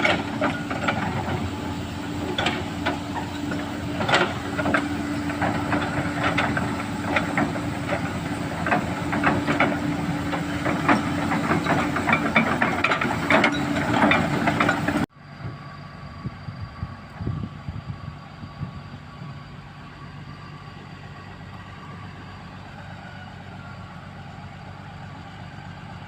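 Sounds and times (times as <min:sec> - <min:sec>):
machine clanks and clicks: 0:00.0 - 0:15.1
excavator engine and hydraulic hum: 0:00.0 - 0:26.0.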